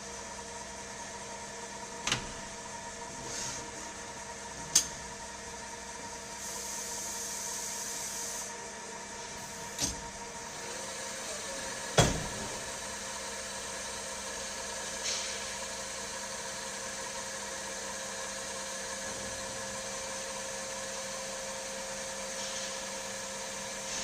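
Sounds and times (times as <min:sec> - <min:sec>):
lathe machine hum: 0:00.0 - 0:24.0
hiss: 0:06.4 - 0:08.5, 0:14.9 - 0:15.6, 0:22.3 - 0:22.9.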